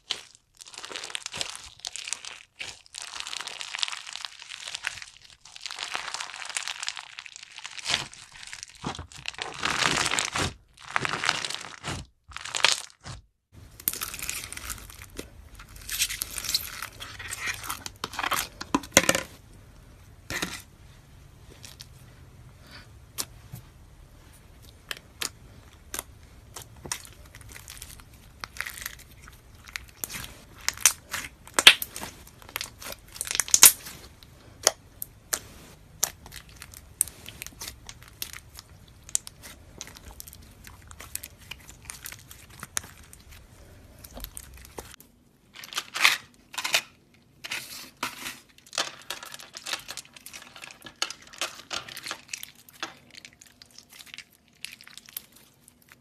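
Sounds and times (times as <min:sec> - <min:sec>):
slime crackling and popping: 0:00.0 - 0:18.6, 0:24.6 - 0:45.0.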